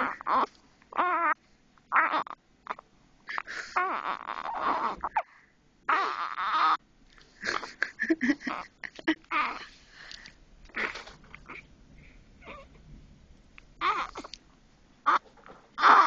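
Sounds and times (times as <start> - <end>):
newborn baby squeaking and grunting: 0.0 - 5.3, 5.9 - 6.8, 9.3 - 9.7, 10.7 - 11.7, 12.4 - 12.8, 13.8 - 14.4, 15.0 - 16.0.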